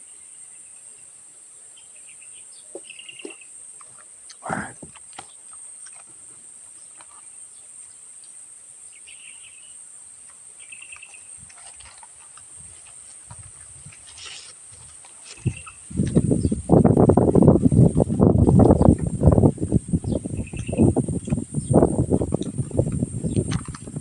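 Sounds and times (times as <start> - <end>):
faint insect chirps: 0.0 - 24.0
soft chewing: 3.2 - 7.3, 10.2 - 16.3.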